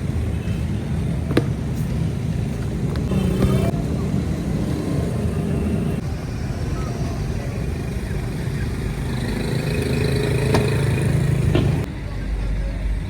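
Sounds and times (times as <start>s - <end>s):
vehicles passing: 0.0s - 13.0s.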